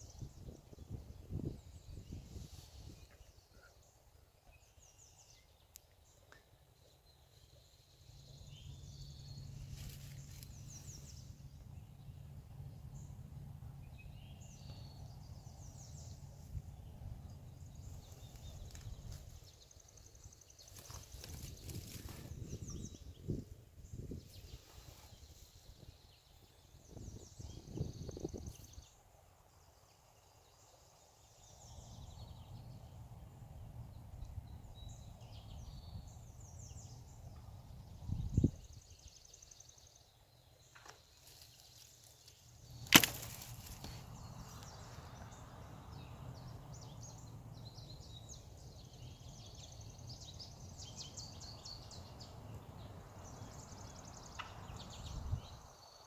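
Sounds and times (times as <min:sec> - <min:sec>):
songbirds chirping: 0:00.0 - 0:56.0
steady rustle: 0:09.6 - 0:11.3, 0:20.6 - 0:22.6, 0:41.0 - 0:44.7
sharp crack of strike on tree: 0:42.7 - 0:44.7, 0:54.3 - 0:54.7.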